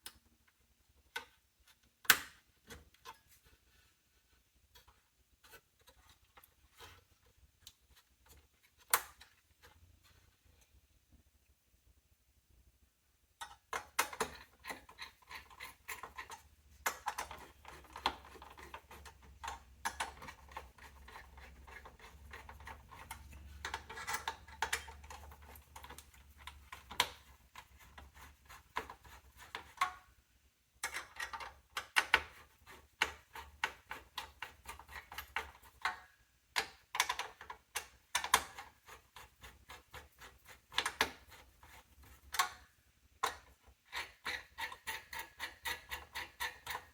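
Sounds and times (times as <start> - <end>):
computer parts clicking and scraping: 13.7 - 30.1, 30.8 - 36.0, 36.6 - 46.9.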